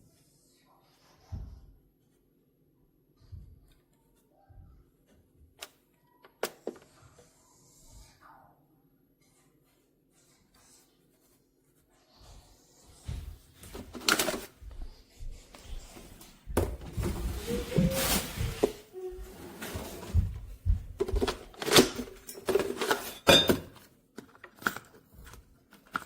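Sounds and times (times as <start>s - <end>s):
rustling: 15.6s - 23.2s
objects knocking and clicking: 20.0s - 26.0s.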